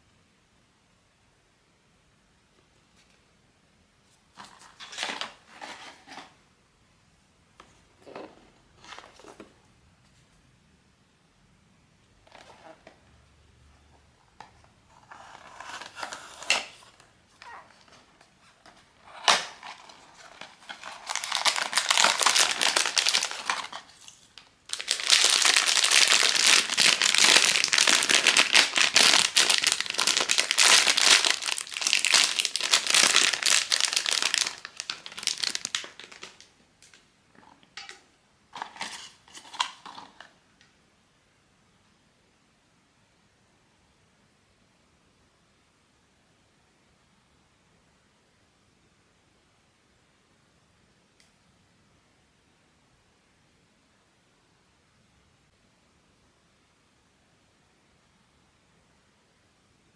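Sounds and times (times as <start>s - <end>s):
plastic packaging crinkling: 14.9s - 37.0s, 38.6s - 40.3s.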